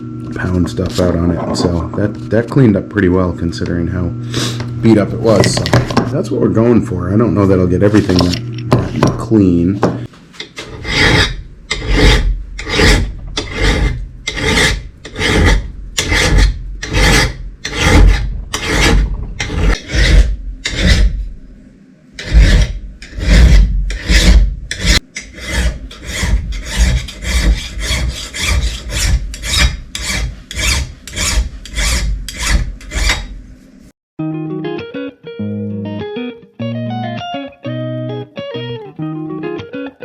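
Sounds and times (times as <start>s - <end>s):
metal being rasped by hand: 10.4s - 21.2s, 22.2s - 33.4s.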